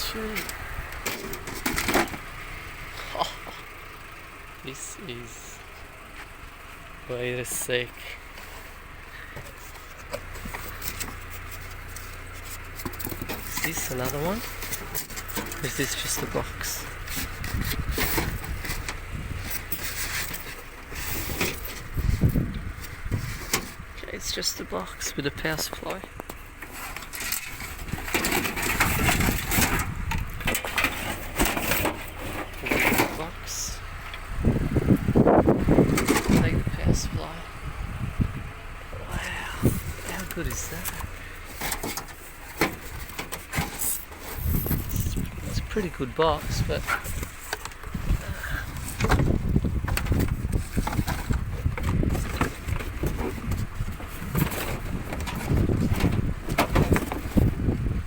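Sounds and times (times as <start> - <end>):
rustling and scraping: 0.0 - 3.6, 7.4 - 37.5, 39.1 - 57.8
wind buffeting microphone: 17.3 - 19.5, 21.8 - 24.0, 28.8 - 30.5, 34.2 - 40.0, 44.4 - 58.0
low rumble: 27.2 - 41.7.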